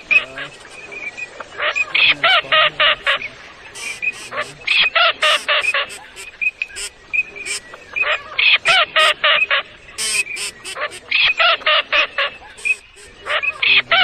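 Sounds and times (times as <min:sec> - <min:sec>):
ducks quacking: 0:00.0 - 0:14.0
short hissing bursts: 0:03.7 - 0:07.7, 0:10.0 - 0:11.1, 0:12.6 - 0:13.5.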